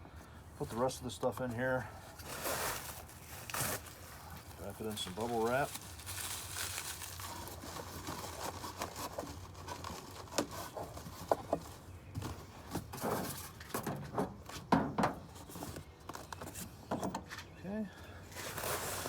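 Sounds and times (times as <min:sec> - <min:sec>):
bubble wrap crinkling: 0:02.1 - 0:11.8, 0:18.3 - 0:19.0.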